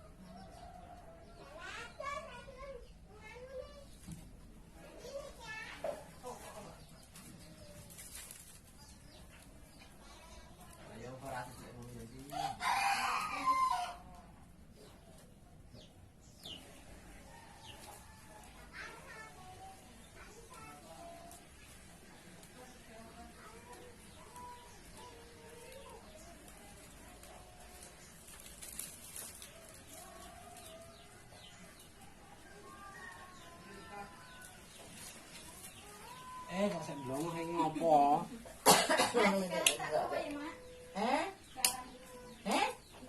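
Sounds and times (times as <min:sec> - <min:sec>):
faint birds chirping: 0:00.0 - 0:43.0
rooster crowing: 0:12.3 - 0:14.1.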